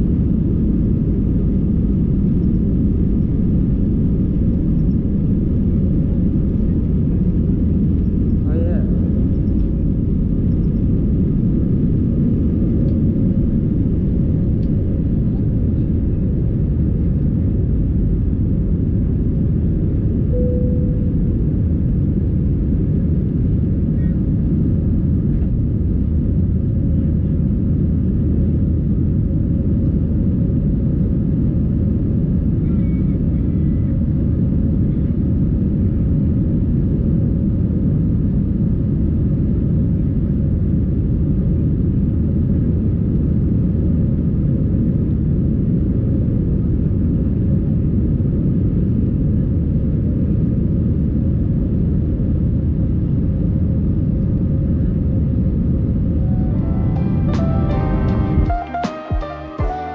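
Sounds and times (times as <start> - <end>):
airliner cabin engine rumble: 0.0 - 58.6.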